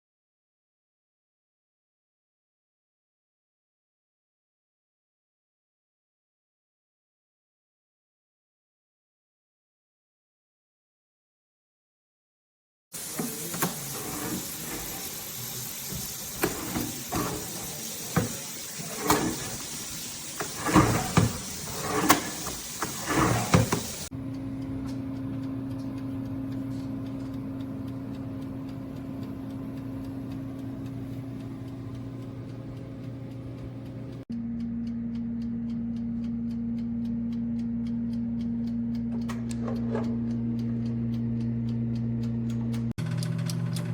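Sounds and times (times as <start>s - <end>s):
oven running with low hum: 13.0s - 43.9s
oven door knocks and clatter: 20.4s - 24.0s.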